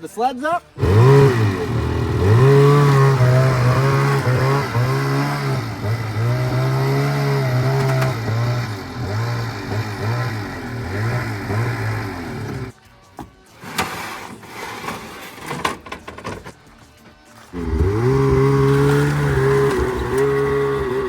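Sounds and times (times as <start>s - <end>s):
snowmobile engine revving: 0.7s - 12.7s, 17.5s - 21.0s.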